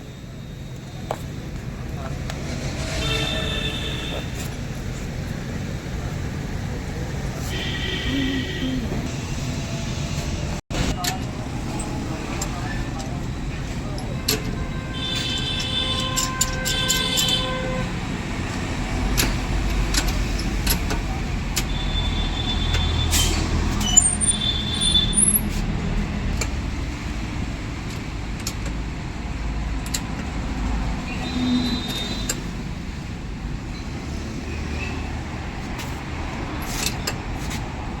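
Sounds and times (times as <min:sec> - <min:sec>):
road traffic rumble: 0:00.0 - 0:38.0.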